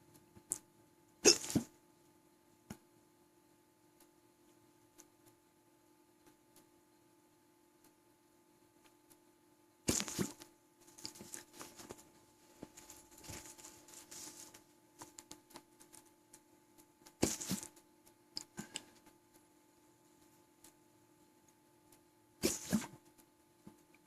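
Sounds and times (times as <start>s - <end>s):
person hiccuping: 1.2s - 1.7s
faint clicks and rustling: 9.9s - 24.0s.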